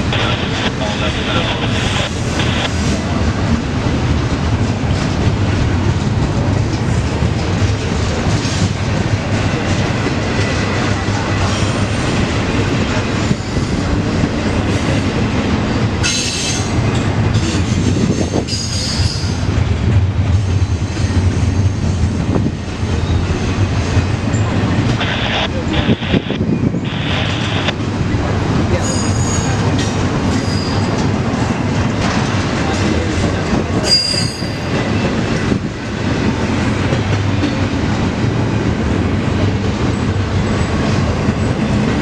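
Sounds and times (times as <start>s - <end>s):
train wheels rumbling on rail: 0.0s - 42.0s.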